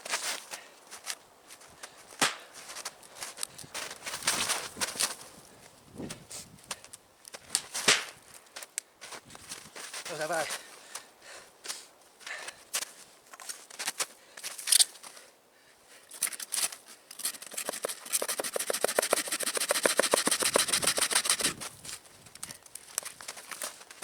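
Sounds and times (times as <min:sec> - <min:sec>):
hand saw rasping through wood: 0:17.3 - 0:21.6.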